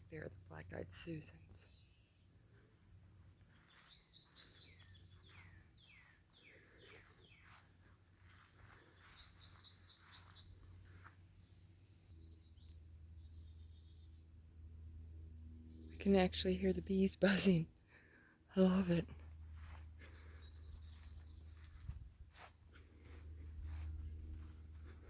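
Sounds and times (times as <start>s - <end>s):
insect trill: 0.0s - 25.0s
birdsong whistled notes: 8.9s - 10.6s
high bird chirps: 8.9s - 10.6s.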